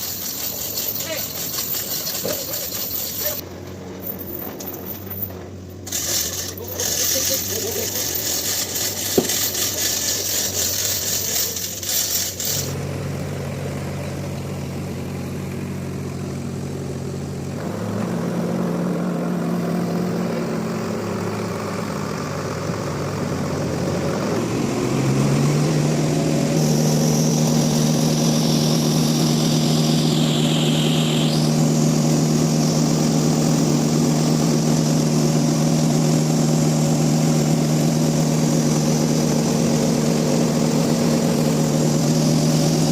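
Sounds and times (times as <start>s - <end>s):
machine engine running: 0.0s - 42.9s
faint high whine sliding down: 25.9s - 36.3s.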